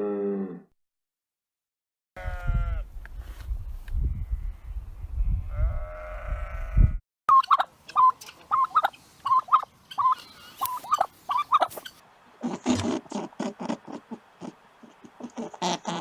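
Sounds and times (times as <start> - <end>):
animal bleating: 2.2 - 2.8, 5.5 - 6.9.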